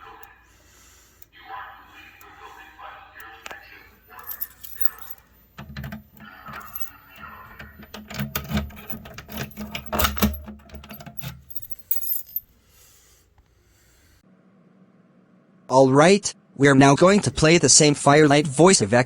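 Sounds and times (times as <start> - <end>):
metallic clinking and rattling: 4.2 - 12.5.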